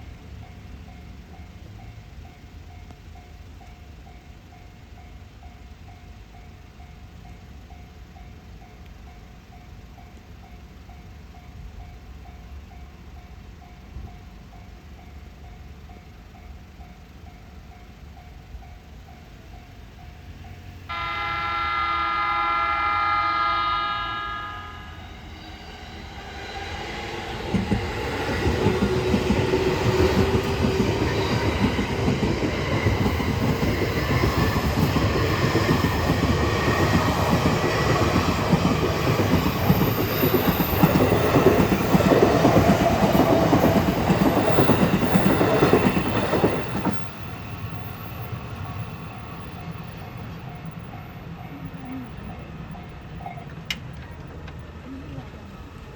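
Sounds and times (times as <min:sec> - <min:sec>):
train rumbling over crossing: 0:00.0 - 0:55.9
train horn blast: 0:20.9 - 0:25.4
wheels clacking over rail joints: 0:25.6 - 0:54.8.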